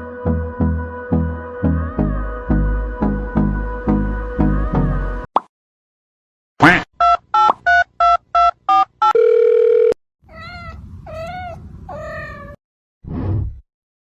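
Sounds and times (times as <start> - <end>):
cat meowing: 10.3 - 12.6.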